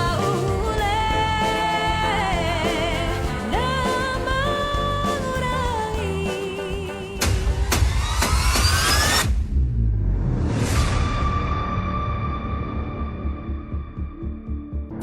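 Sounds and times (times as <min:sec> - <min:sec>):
pop music backing: 0:00.0 - 0:09.2.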